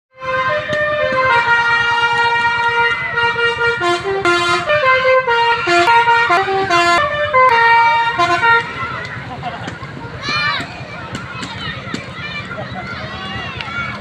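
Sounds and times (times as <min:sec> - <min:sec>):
musical air horn playing tune: 0:00.2 - 0:08.8.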